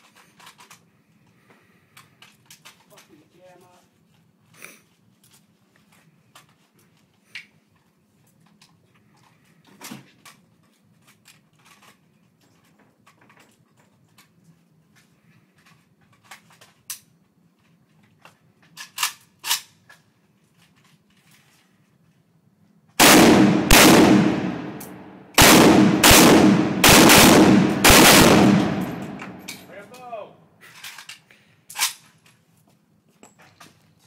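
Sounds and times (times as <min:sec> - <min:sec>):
firearm action metallic clicks: 0:23.7 - 0:29.7.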